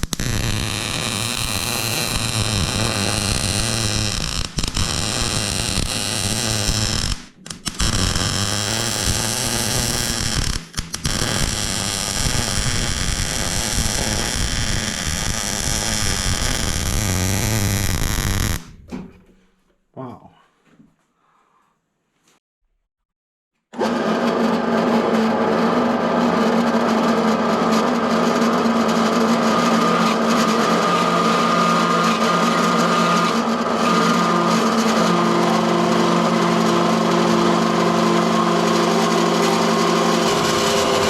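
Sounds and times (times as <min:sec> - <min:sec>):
welder arc crackling: 0:00.0 - 0:18.7, 0:29.2 - 0:41.0.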